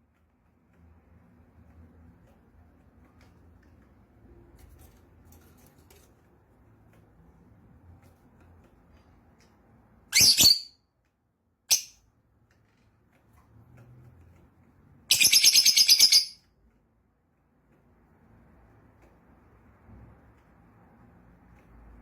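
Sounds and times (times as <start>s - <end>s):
lovebird calling and chirping: 10.1s - 10.8s, 11.7s - 12.0s, 15.1s - 16.4s.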